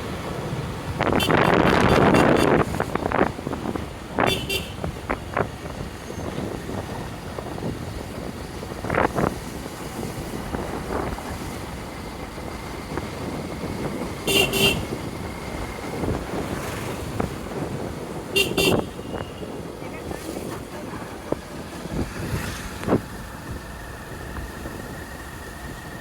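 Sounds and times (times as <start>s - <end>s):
wind and road noise: 0.0s - 26.0s
horn beeps: 1.1s - 2.7s, 4.2s - 4.8s, 14.3s - 14.9s, 18.4s - 19.6s.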